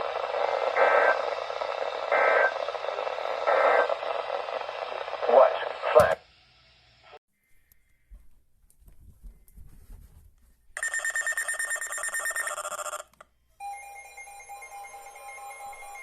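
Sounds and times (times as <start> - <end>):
pulsing electronic alarm beep: 10.8 - 13.0.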